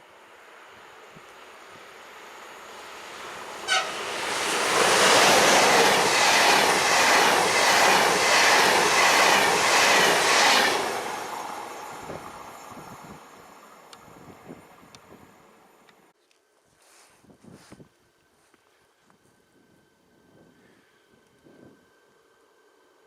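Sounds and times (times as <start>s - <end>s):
train passing at speed: 0.0s - 15.8s
train horn toot: 3.5s - 4.3s.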